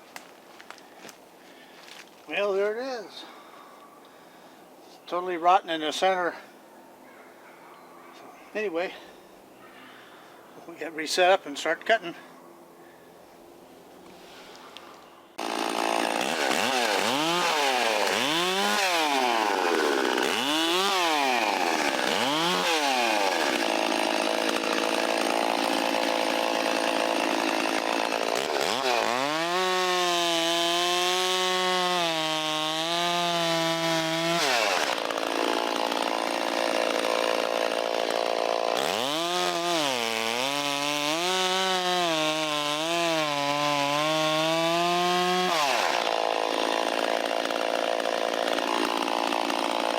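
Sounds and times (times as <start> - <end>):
chainsaw sawing through wood: 15.4 - 49.9.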